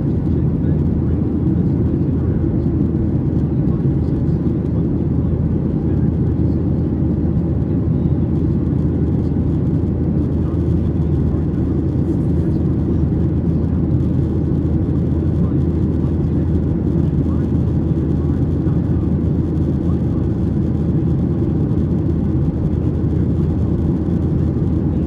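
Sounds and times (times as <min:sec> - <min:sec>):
aircraft cabin rumble: 0:00.0 - 0:25.0
constant low hum: 0:00.0 - 0:25.0.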